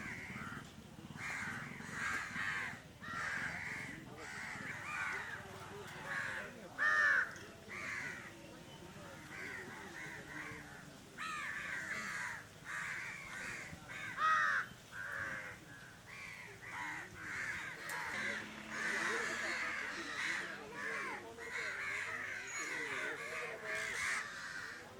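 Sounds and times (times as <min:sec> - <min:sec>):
crows cawing: 0:00.0 - 0:08.4, 0:09.2 - 0:24.9.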